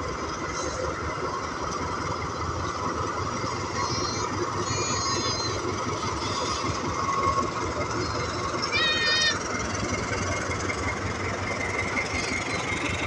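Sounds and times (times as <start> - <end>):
train rumbling: 0.0 - 13.0
faint high squeals: 3.6 - 9.5.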